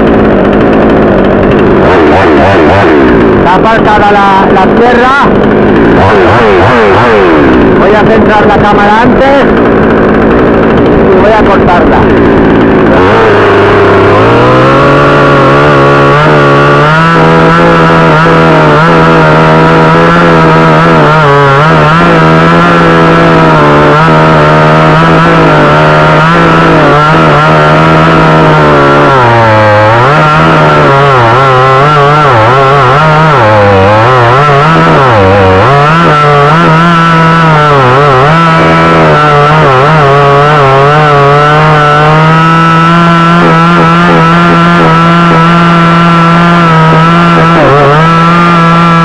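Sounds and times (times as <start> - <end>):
chainsaw revving high whine: 0.0 - 49.0.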